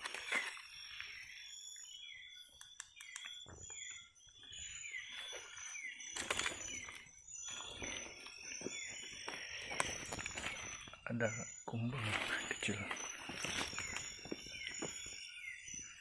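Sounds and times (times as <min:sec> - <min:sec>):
insects high-pitched drone: 0:00.0 - 0:16.0
clicks and rustles: 0:06.1 - 0:08.1.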